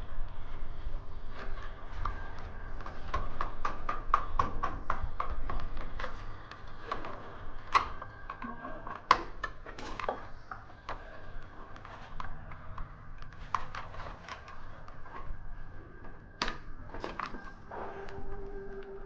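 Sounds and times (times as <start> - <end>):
hand tools clicking and tapping: 2.0 - 15.3.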